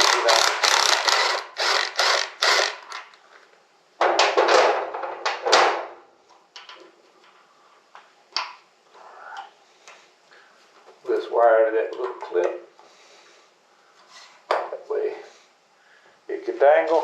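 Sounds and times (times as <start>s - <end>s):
hand ratchet clicking: 0.0s - 3.2s.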